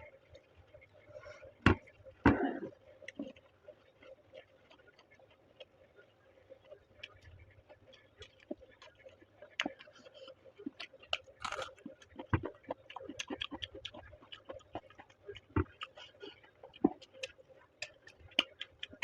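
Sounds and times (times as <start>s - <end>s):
person chewing food: 0.1s - 19.0s
wet mouth clicks: 10.7s - 19.0s
crunching bites: 11.1s - 14.9s.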